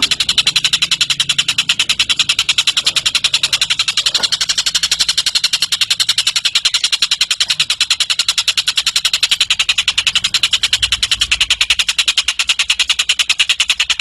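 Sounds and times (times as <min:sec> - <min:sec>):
bird trilling: 0:00.0 - 0:14.0.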